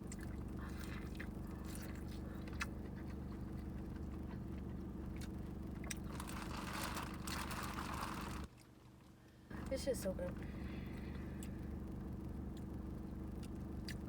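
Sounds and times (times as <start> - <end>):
chewing and biting: 0.0 - 9.2, 12.5 - 14.0
sharp clicks and small crunches: 0.0 - 11.6, 12.5 - 14.0
steady low hum: 0.0 - 14.0.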